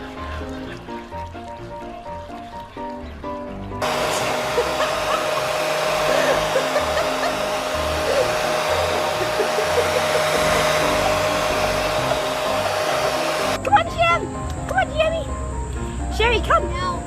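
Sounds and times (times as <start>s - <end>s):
blower motor rushing hiss: 3.8s - 13.6s.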